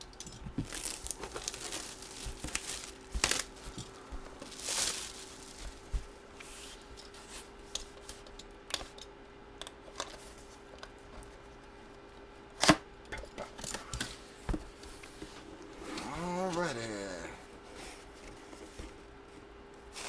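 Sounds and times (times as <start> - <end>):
faint steady hum: 0.0 - 20.0
hands handling cardboard packaging: 0.5 - 8.2.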